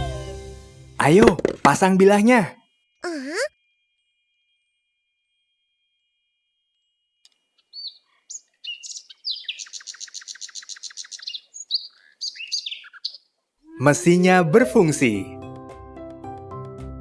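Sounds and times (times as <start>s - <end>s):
cartoon chirpy tones and trill: 3.0s - 3.5s.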